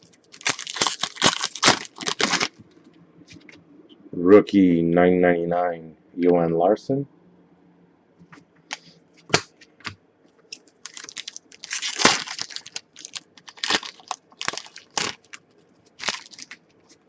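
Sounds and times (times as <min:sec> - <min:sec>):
foil wrapper crinkling: 0:00.1 - 0:02.6, 0:10.6 - 0:17.0.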